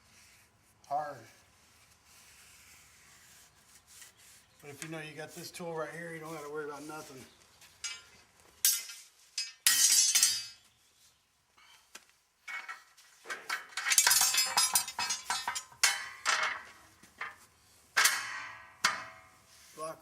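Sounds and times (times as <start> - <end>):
steel clinking and scraping: 7.8 - 10.6, 12.5 - 19.6.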